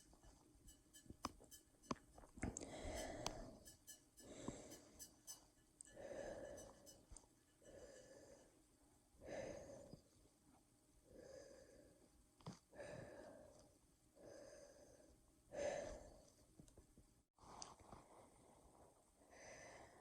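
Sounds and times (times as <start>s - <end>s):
person breathing slowly: 2.5s - 10.2s, 11.0s - 16.4s, 19.2s - 20.0s.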